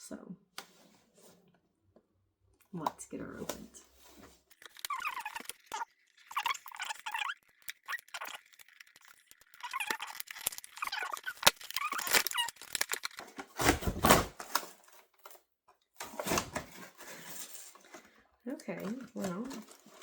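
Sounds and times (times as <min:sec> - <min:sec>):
plastic packaging clicks and squeaks: 0:03.5 - 0:20.0
cardboard box ripping: 0:09.6 - 0:14.9, 0:16.0 - 0:17.8.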